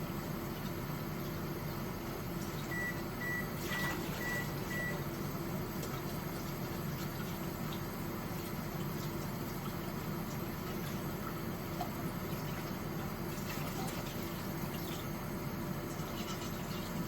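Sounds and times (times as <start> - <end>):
steady appliance hum: 0.0 - 17.0
appliance high beeps: 2.7 - 5.1.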